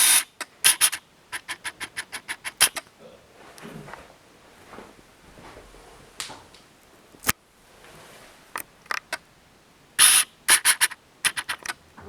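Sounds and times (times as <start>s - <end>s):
sharp clicks: 0.0s - 2.9s, 8.6s - 9.2s, 10.0s - 11.8s.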